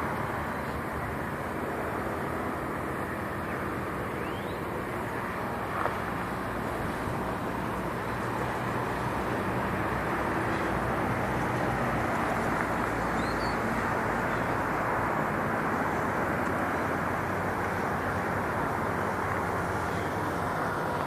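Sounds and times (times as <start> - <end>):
distant traffic: 0.0 - 21.0
faint rising chirp: 4.1 - 4.7, 13.1 - 13.7.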